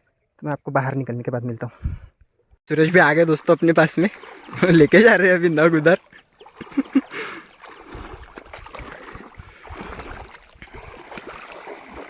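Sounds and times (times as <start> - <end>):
water sloshing around wading person: 2.8 - 12.0.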